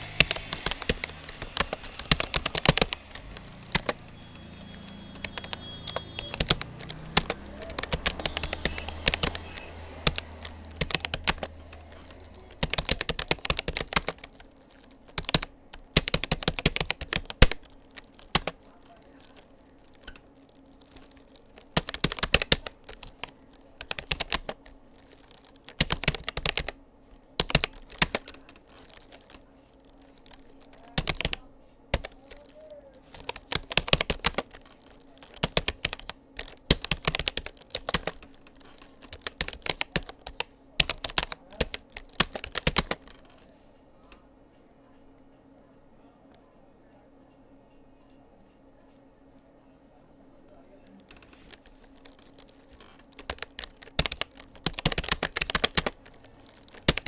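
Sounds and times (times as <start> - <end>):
keyboard key clicks: 0.0 - 14.5, 15.1 - 18.6, 20.9 - 26.7, 27.4 - 29.4, 30.1 - 43.4, 51.1 - 57.0.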